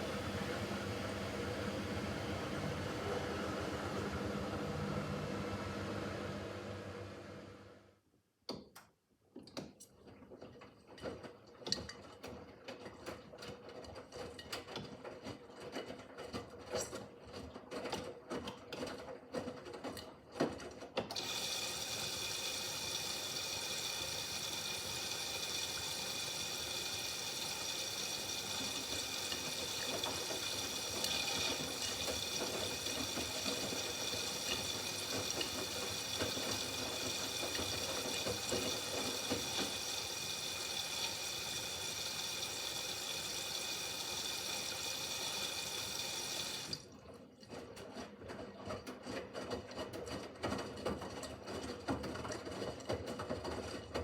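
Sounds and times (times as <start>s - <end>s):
water rushing into washing machine: 0.0s - 7.8s, 9.6s - 54.0s
washing machine clicking and knocking: 28.2s - 40.3s.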